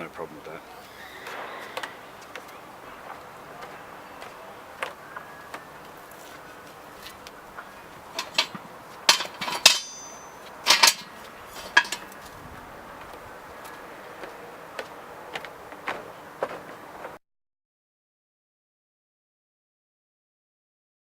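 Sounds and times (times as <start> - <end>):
metal barbecue parts clanking: 1.2 - 17.1.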